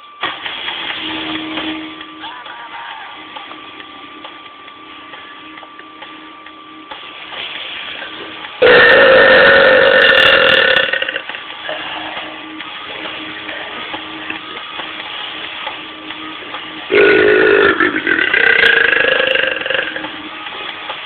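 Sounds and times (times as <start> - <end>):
man burping: 8.6 - 11.4, 16.9 - 20.1.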